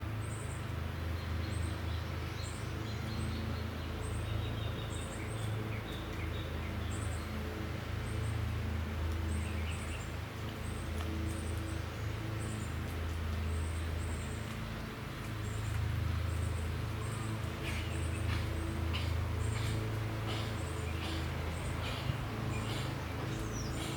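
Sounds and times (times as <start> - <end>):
bird chirping: 15.4 - 23.9.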